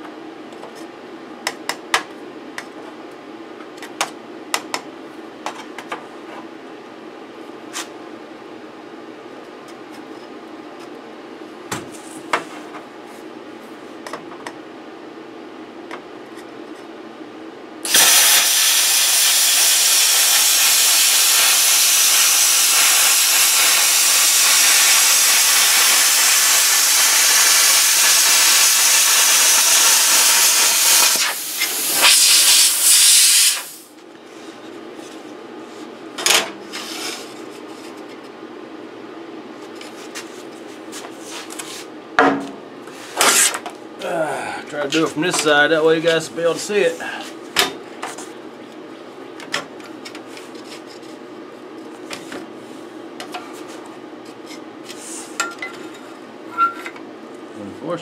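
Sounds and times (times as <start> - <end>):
plasma cutter hiss: 17.9 - 33.9.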